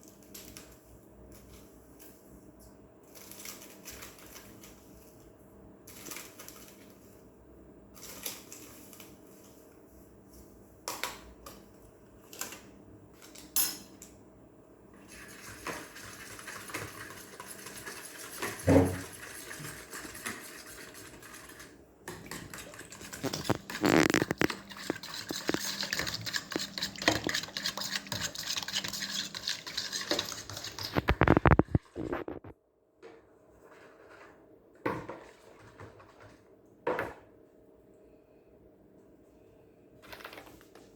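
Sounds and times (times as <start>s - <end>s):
dishes clinking and scraping: 16.7s - 20.4s, 22.1s - 32.4s.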